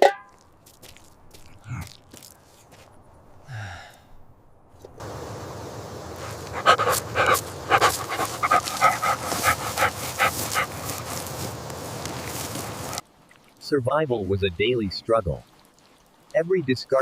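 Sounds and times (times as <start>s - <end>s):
background hiss: 4.7s - 17.0s
dog panting: 6.1s - 11.4s.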